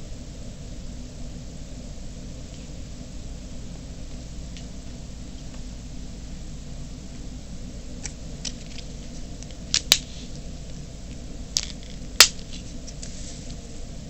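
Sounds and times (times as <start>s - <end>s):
steady low hum: 0.0s - 14.0s
tape clicks and snips: 9.5s - 10.1s, 11.6s - 12.6s.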